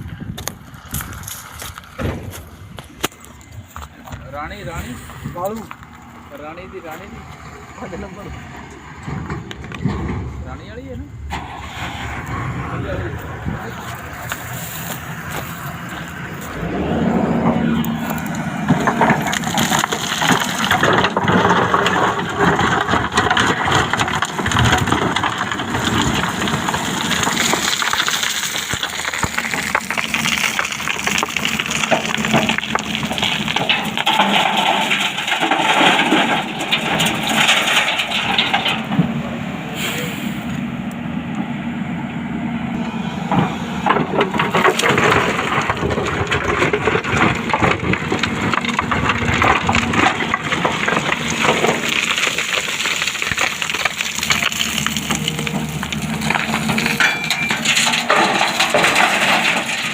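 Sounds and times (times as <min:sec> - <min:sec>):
excavator engine running: 0:00.4 - 0:59.9
crunching and crackling material: 0:12.7 - 0:39.0, 0:44.0 - 0:59.9.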